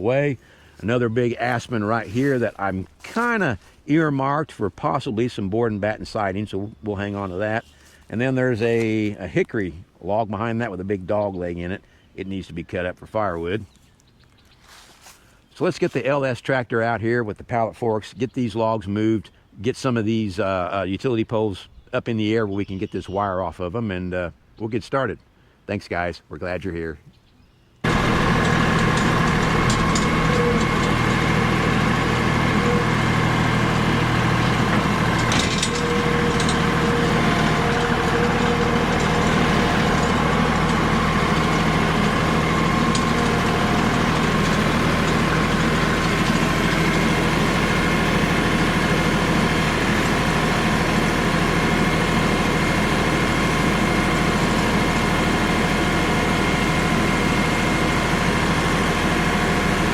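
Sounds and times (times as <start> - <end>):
tractor diesel engine running: 0.0 - 11.8, 27.8 - 59.9.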